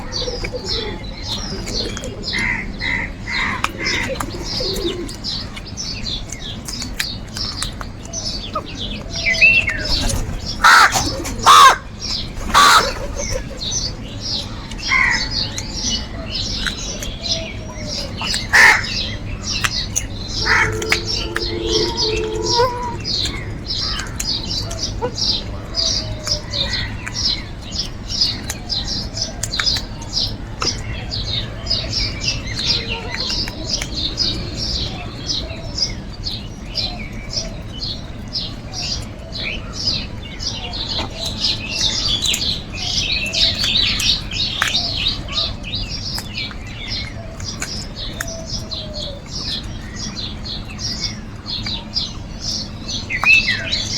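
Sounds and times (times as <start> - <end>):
small birds chirping: 0.0 - 53.9
crows cawing: 10.6 - 11.8, 12.5 - 13.2, 18.5 - 19.0, 20.2 - 24.2.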